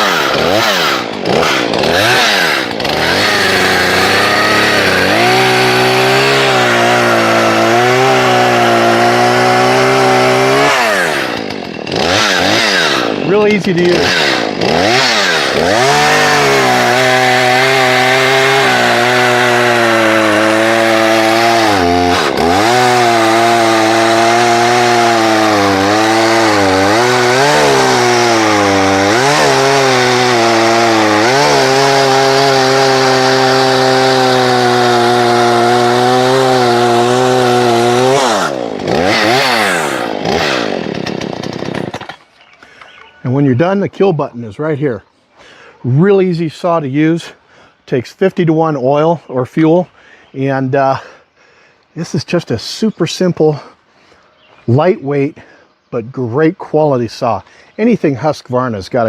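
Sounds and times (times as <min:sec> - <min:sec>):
chainsaw engine revving: 0:00.0 - 0:43.5.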